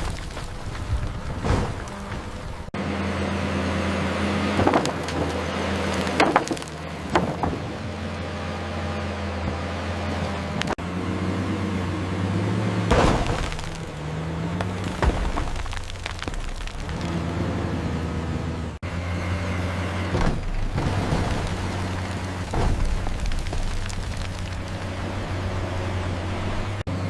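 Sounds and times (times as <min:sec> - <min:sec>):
wood snapping and splintering: 0:00.0 - 0:02.7, 0:04.5 - 0:07.6, 0:12.9 - 0:14.0, 0:14.6 - 0:17.4, 0:20.2 - 0:25.2
bulldozer diesel engine droning: 0:00.0 - 0:27.0.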